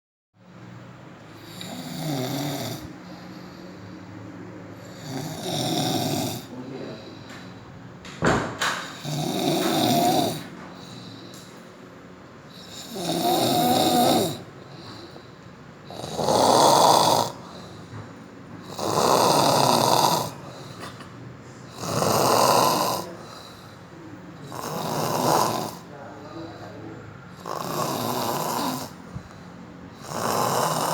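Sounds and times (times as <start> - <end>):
loud rasping snoring: 1.4 - 3.6, 4.7 - 7.4, 8.8 - 11.2, 12.5 - 15.2, 15.8 - 17.9, 18.6 - 21.0, 21.7 - 26.7, 27.3 - 30.9.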